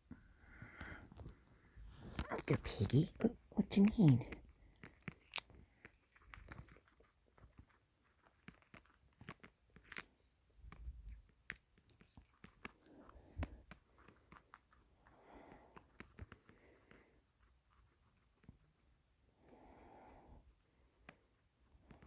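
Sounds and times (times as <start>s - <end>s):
pig crunching a carrot: 2.5s - 10.2s.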